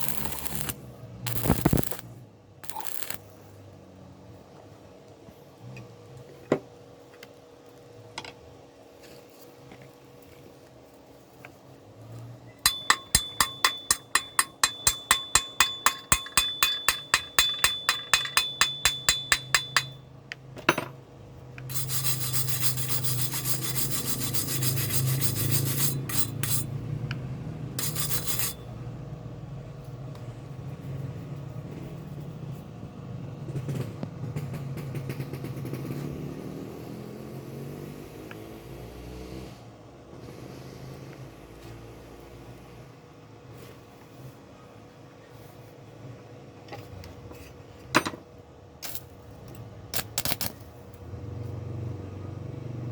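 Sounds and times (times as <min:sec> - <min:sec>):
ringing metal strokes: 0:00.0 - 0:02.0, 0:02.6 - 0:03.2, 0:12.6 - 0:20.1, 0:21.7 - 0:26.7, 0:27.8 - 0:28.8
rough metal scraping: 0:00.0 - 0:03.2, 0:21.7 - 0:26.8, 0:27.7 - 0:28.7
low hum: 0:00.0 - 0:03.3.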